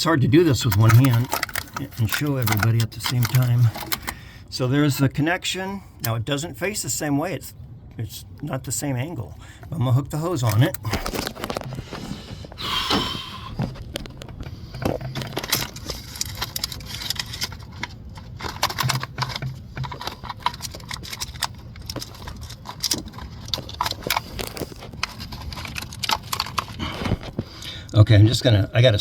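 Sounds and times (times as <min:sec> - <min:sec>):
hands fitting rubber hose: 0:00.0 - 0:04.3, 0:09.6 - 0:28.0.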